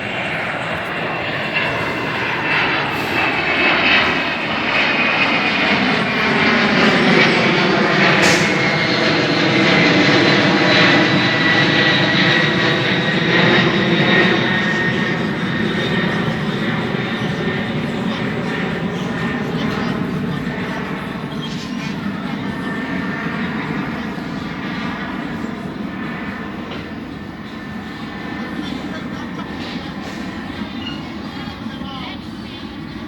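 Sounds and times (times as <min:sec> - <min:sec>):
jet engines at takeoff power: 0:00.0 - 0:33.0.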